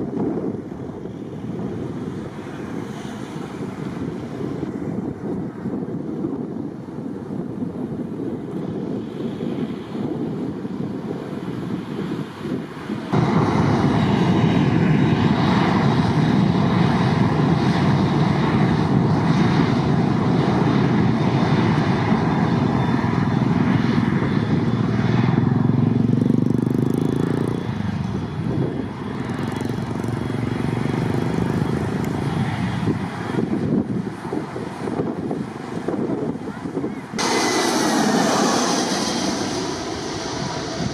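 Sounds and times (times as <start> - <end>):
jet engines passing close: 0.0 - 40.9.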